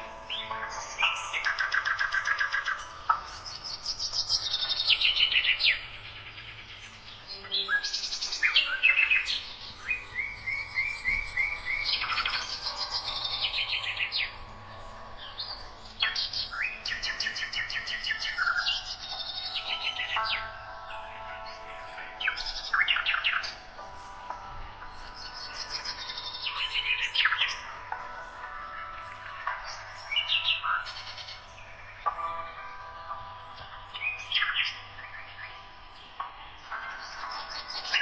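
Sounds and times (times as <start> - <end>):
songbird trills and chirps: 0.0 - 38.0.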